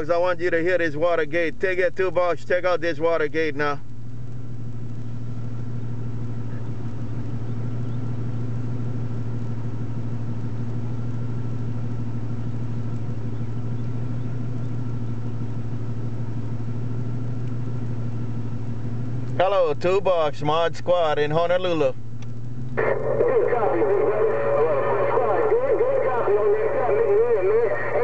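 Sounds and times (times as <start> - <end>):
steady low drone: 22.7 - 28.0.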